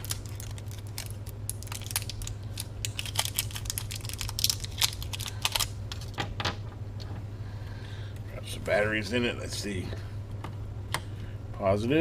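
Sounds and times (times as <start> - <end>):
batteries clicking and rattling: 0.0 - 6.2.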